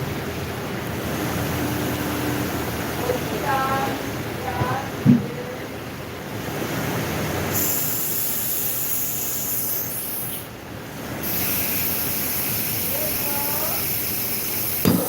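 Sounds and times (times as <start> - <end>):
pressurised spray hissing: 7.5 - 10.6, 11.2 - 15.0.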